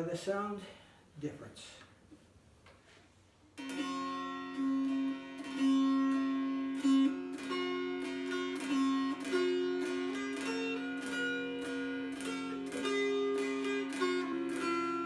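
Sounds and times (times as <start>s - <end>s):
dulcimer strummed: 3.6s - 15.0s.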